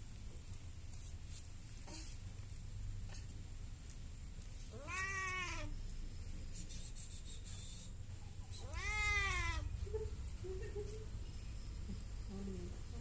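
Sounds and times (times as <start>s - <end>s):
cat meowing: 4.7s - 5.7s, 8.6s - 9.7s.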